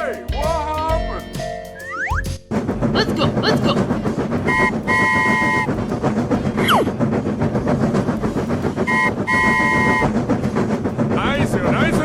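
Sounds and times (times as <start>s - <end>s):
train wheels clickety-clack: 2.4s - 12.0s.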